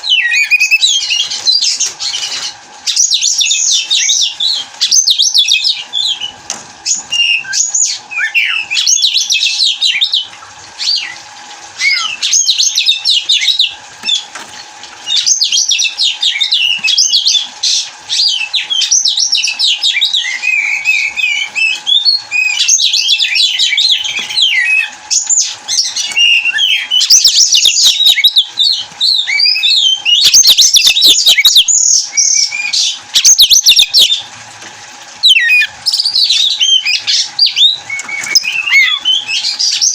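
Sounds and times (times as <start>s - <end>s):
songbird singing: 0.0s - 1.8s, 35.2s - 39.9s.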